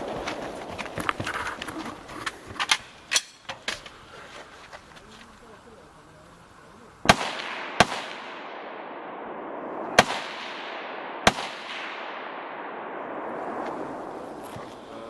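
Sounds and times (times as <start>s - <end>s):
rifle shots with echo: 7.0s - 14.4s.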